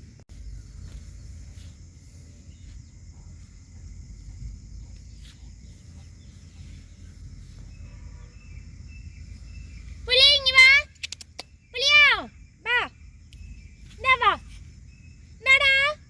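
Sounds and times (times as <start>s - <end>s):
steady low rumble: 0.0s - 10.1s.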